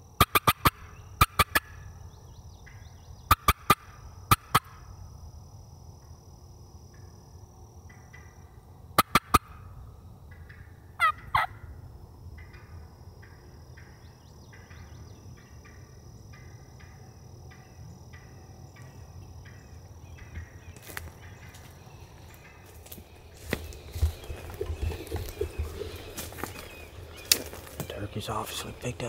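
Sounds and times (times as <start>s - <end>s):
turkey clucks and yelps: 11.0s - 11.6s, 23.4s - 27.8s.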